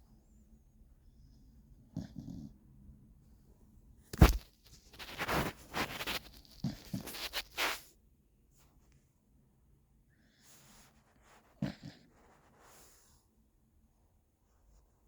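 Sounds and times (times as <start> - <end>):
dog snoring: 1.8 - 2.6, 11.6 - 13.0.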